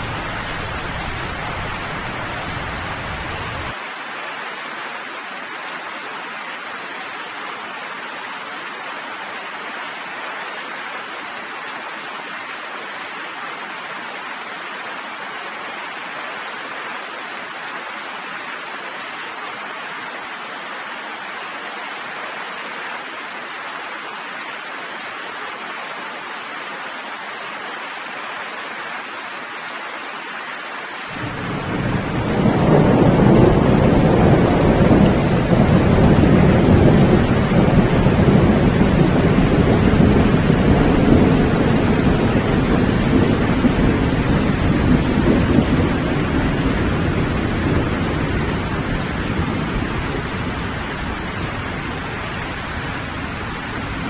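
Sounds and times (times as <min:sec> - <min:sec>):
steady rain: 0:00.0 - 0:54.0
low rumble of thunder: 0:31.2 - 0:52.0.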